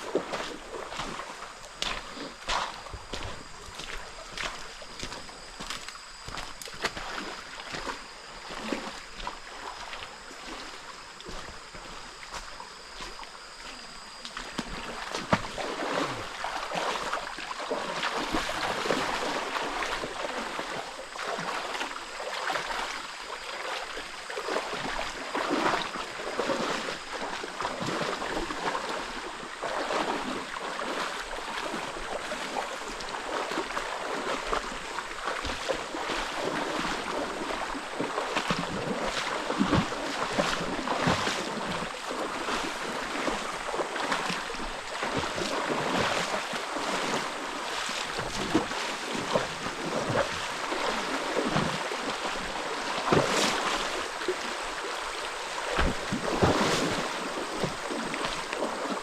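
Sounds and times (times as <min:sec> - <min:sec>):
water splashing and running: 0:00.0 - 0:59.0
water sloshing: 0:24.4 - 0:59.0.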